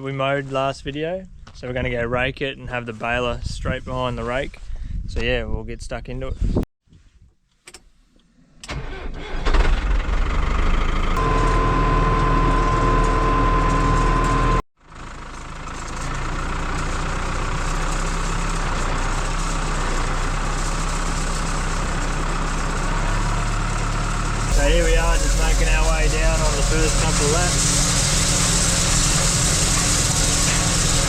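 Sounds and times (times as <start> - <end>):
tractor engine running: 8.7 - 31.0
high-pitched warning tone: 11.2 - 14.6, 24.5 - 27.7.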